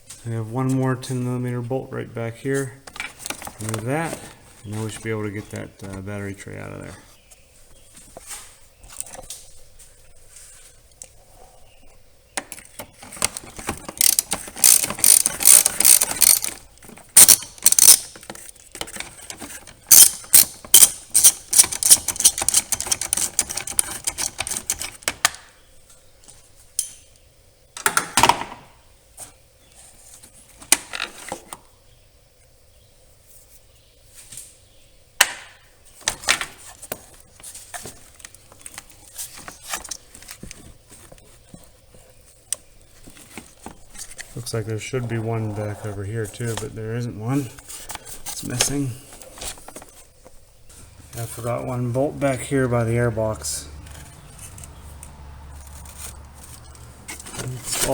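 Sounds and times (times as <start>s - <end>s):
socket ratchet clicking: 13.9s - 18.2s, 19.8s - 25.3s.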